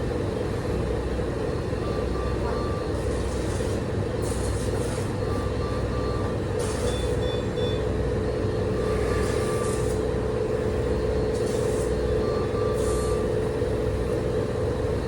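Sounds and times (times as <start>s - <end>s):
machinery hum: 0.0s - 15.0s
medical alarm beeping: 5.2s - 8.0s, 12.1s - 13.4s.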